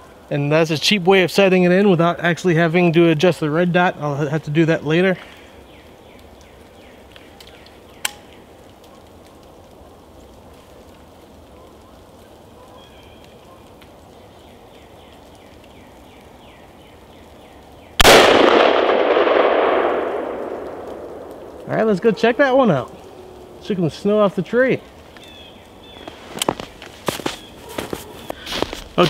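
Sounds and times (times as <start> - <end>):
rifle shot with echo: 18.0 - 21.6.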